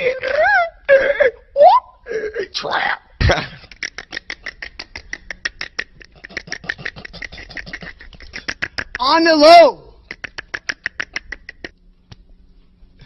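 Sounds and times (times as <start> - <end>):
man making mouth clicks: 3.6 - 9.0, 10.0 - 12.4.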